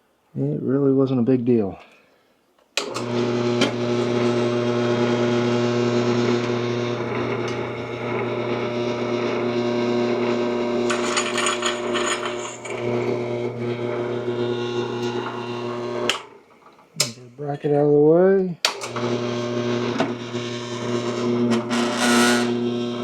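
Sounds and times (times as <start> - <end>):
drill press motor hum: 2.8 - 16.9, 18.7 - 23.0
drill bit grinding steel: 3.0 - 16.8, 18.9 - 23.0
crackly scratching: 10.2 - 16.2, 20.4 - 22.6.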